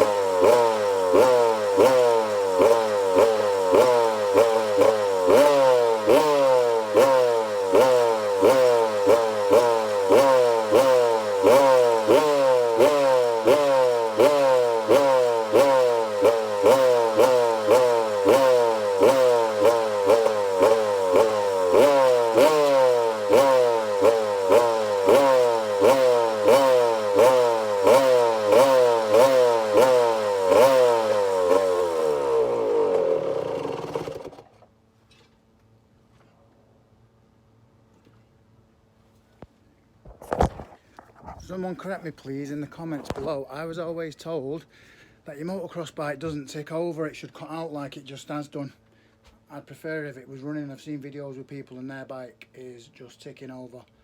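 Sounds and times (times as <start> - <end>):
two-stroke engine revving: 0.0 - 34.6.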